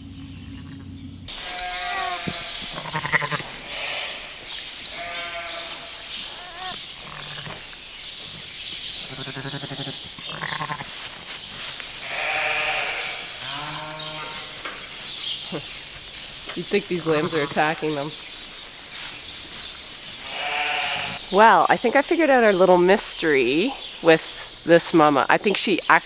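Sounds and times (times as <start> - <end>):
sheep bleating: 1.3 - 7.7, 9.0 - 11.0, 12.0 - 14.6, 17.0 - 18.1, 20.2 - 21.2.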